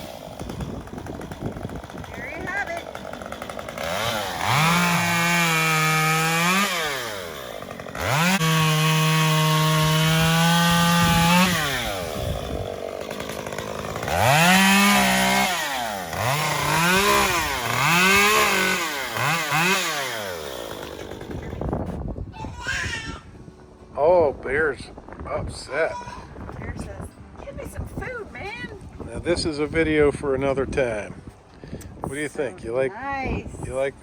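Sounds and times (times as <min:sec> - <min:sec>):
chainsaw revving: 0:00.0 - 0:21.9.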